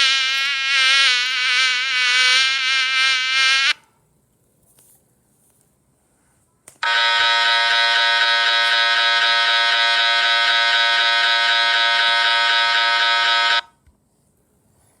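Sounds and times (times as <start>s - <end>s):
loud electric buzz: 0.0s - 3.8s, 6.8s - 13.6s.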